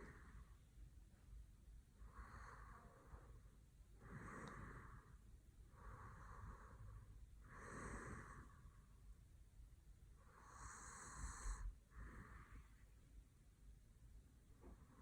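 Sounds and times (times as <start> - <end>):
man breathing in sleep: 0.0 - 0.6, 2.0 - 9.0, 10.2 - 13.0
light snoring: 4.0 - 8.7, 10.2 - 12.8.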